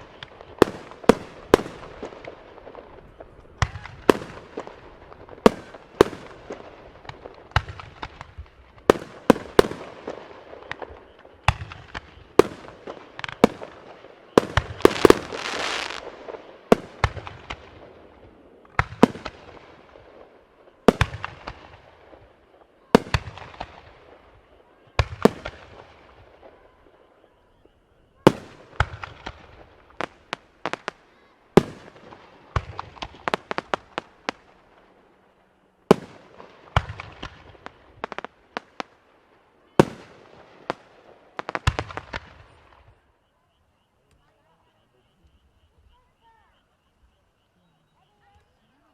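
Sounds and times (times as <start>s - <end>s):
fireworks bangs: 0.0s - 43.1s
fireworks hissing and crackling: 0.0s - 43.2s.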